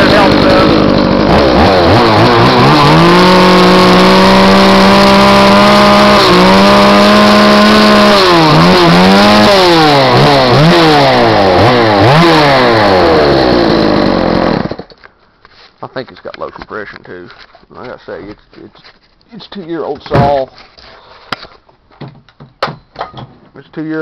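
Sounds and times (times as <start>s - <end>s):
chainsaw revving: 0.0s - 14.9s.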